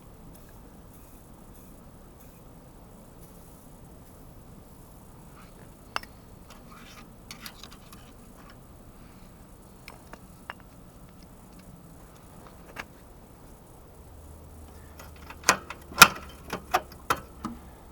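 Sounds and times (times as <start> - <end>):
faint steady hum: 0.0 - 17.9
metal wrenches clinking: 6.0 - 8.6, 9.8 - 12.9, 14.7 - 17.5
sharp clicks: 14.7 - 17.6.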